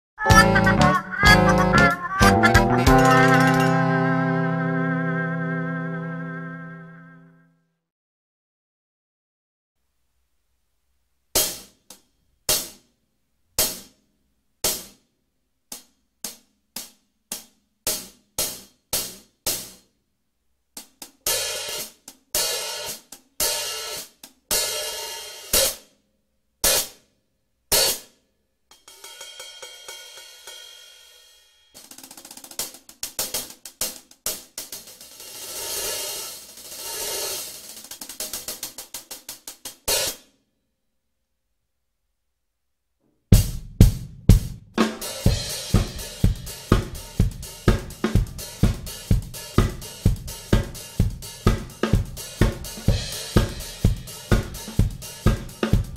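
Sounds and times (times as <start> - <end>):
hi-hat cymbals played with sticks: 20.8 - 25.8, 28.7 - 40.3, 43.4 - 55.9.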